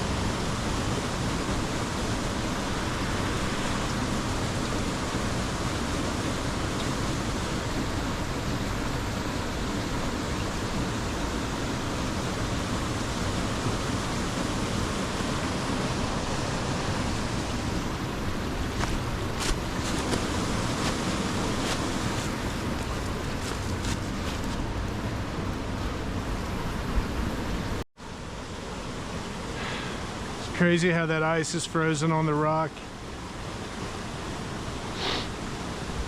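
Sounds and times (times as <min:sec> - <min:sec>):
waterfall rushing: 0:00.0 - 0:26.9.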